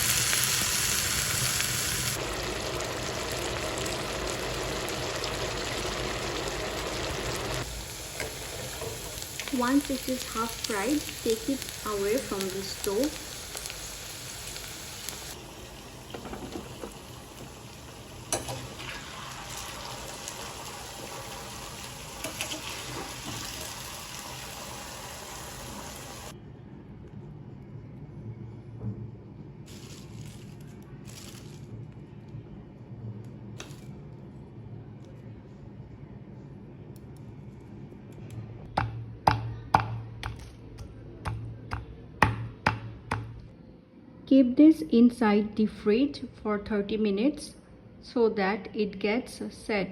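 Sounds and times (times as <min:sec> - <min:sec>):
potatoes sizzling in a pan: 0:00.0 - 0:26.3, 0:29.7 - 0:30.4
sharp kitchen taps: 0:38.7 - 0:43.5
utensil knocking on pan: 0:38.8 - 0:40.4, 0:41.3 - 0:43.4.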